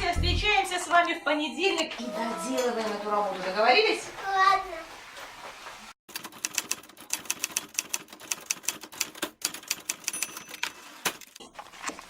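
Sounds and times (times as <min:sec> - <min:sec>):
typewriter keys clacking: 0:06.1 - 0:12.0.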